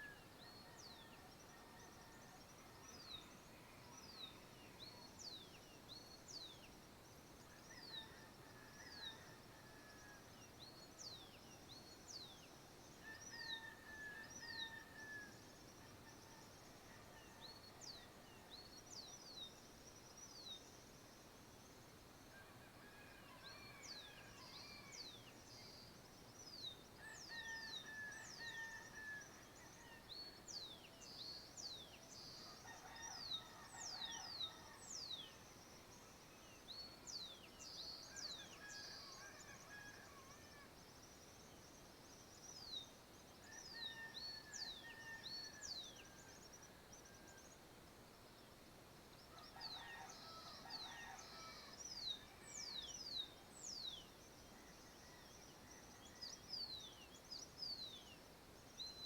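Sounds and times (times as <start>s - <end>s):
distant rooster crowing: 49.3s - 51.8s.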